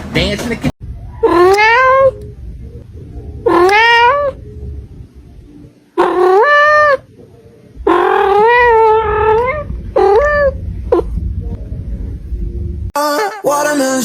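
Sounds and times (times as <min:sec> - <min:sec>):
cat meowing: 0:01.2 - 0:02.2, 0:03.4 - 0:04.4, 0:06.0 - 0:07.1, 0:07.8 - 0:11.1.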